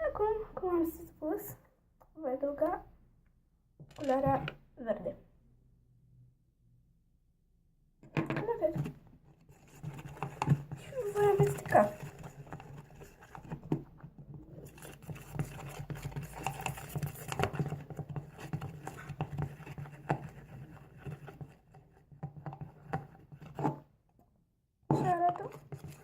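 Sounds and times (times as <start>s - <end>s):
utensil scraping and tapping bowl: 8.1s - 23.9s, 24.9s - 26.0s.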